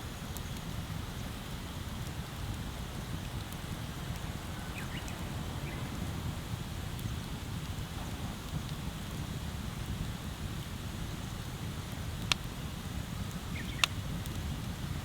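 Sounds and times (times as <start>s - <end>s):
bonfire low rumble: 0.1s - 15.0s
crackling wood pops: 12.2s - 12.5s, 13.3s - 14.6s.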